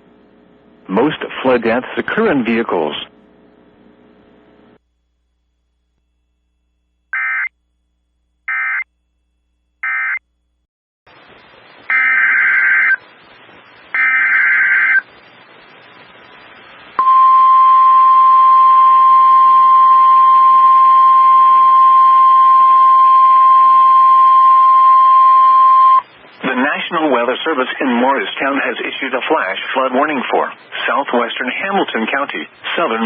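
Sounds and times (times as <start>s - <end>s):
background hiss: 11.1s - 19.3s
screeching digital data bursts: 11.9s - 13.0s.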